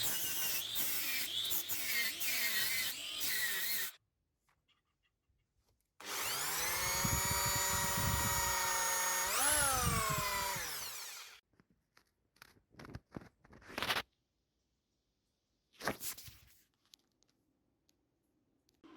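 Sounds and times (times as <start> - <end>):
power tool motor whining: 6.0 - 11.4.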